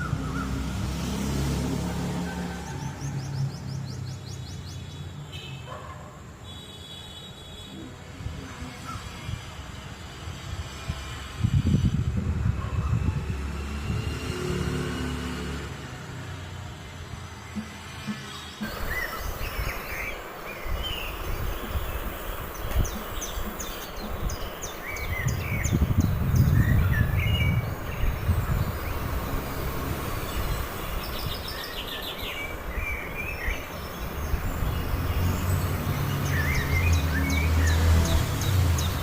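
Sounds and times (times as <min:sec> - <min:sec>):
small birds chirping: 0:17.5 - 0:39.0.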